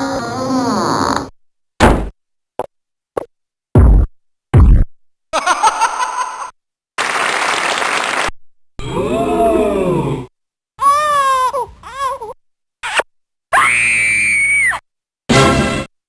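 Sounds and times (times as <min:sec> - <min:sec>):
short pops and thumps: 0:01.8 - 0:05.0.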